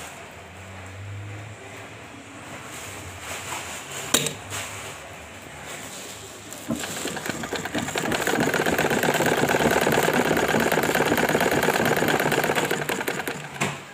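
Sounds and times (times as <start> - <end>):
sewing machine running: 6.6 - 13.9.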